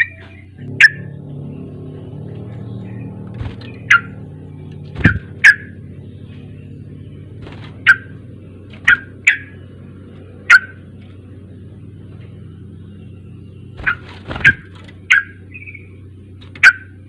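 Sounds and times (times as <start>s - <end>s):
low background hum: 0.0s - 17.0s
bird calling sharp notes: 2.6s - 9.8s, 10.4s - 11.0s, 12.7s - 16.0s.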